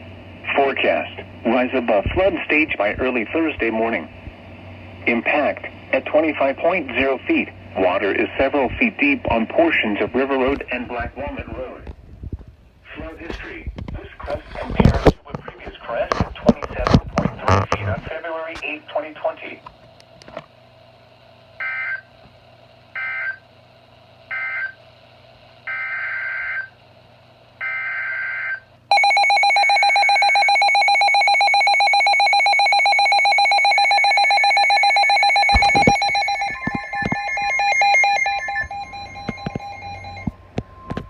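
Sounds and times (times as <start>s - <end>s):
crackles: 12.1s - 18.7s, 35.4s - 41.0s
steady attention signal tone: 32.6s - 41.0s.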